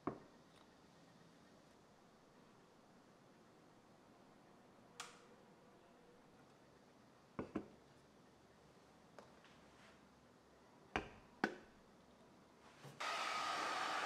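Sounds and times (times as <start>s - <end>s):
appliance motor rushing hiss: 13.0s - 14.0s.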